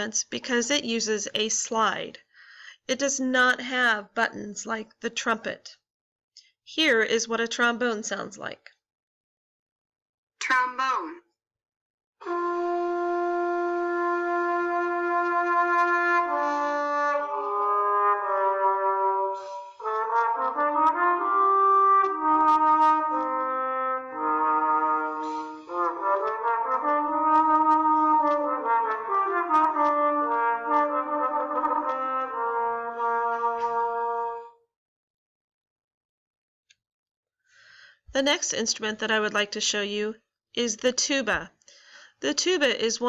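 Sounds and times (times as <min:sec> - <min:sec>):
trombone melody: 0:12.2 - 0:34.6.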